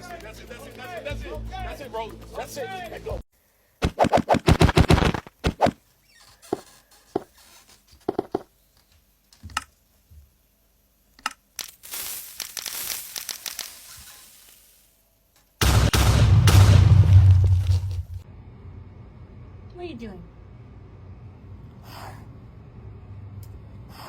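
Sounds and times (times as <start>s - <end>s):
rustling crinkling noise: 11.4s - 14.6s, 17.1s - 18.2s.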